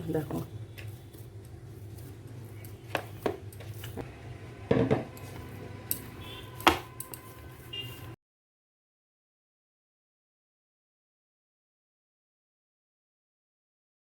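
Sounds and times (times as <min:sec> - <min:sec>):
low steady hum: 0:00.0 - 0:08.2
dishes and utensils clinking: 0:02.5 - 0:08.2.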